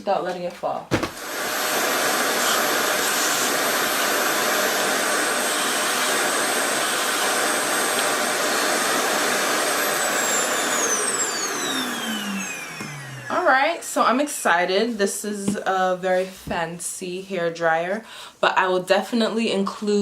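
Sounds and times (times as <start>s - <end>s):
hair dryer motor whining: 1.0s - 13.7s.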